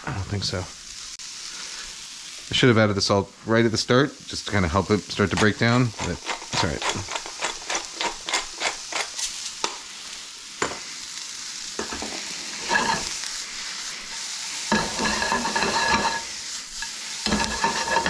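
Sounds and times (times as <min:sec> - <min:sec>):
vegetables sizzling in a skillet: 0:00.0 - 0:18.0
utensil scraping a pan: 0:05.2 - 0:09.7, 0:11.8 - 0:13.3, 0:13.9 - 0:18.0.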